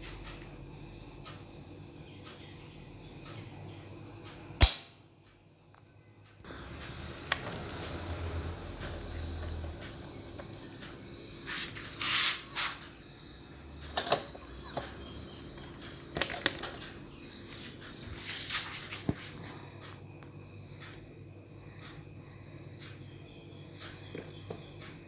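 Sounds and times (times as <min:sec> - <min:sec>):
scraping and rustling: 0:17.5 - 0:19.5.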